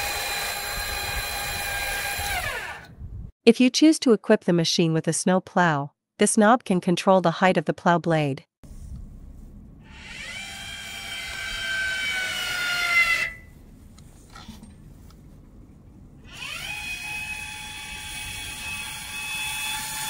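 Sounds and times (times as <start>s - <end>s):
electric actuator motor whining: 0.0s - 3.0s, 9.9s - 13.4s, 16.2s - 20.0s.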